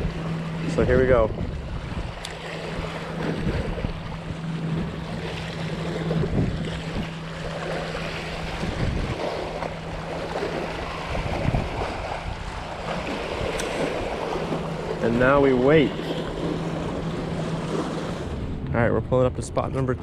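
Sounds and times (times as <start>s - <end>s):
steady low hum: 0.0s - 20.0s
wind buffeting microphone: 0.0s - 20.0s
river water flowing: 1.5s - 18.5s.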